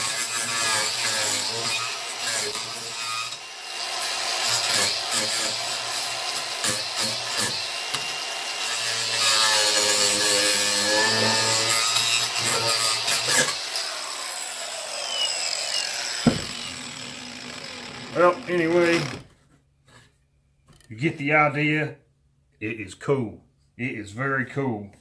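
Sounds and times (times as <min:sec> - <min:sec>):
angle grinder cutting wood: 0:00.0 - 0:19.3
sharp knocks: 0:16.2 - 0:16.7.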